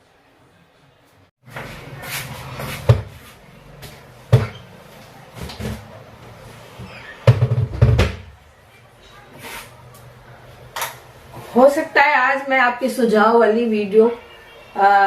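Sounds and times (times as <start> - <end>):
knocks and clunks: 7.2 - 8.4.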